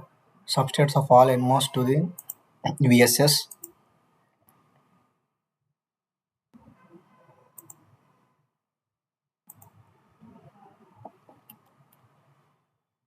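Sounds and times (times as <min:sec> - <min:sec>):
low background noise: 0:00.0 - 0:05.2
computer mouse clicks: 0:02.2 - 0:02.5, 0:03.5 - 0:03.8, 0:07.6 - 0:08.0, 0:09.5 - 0:12.2.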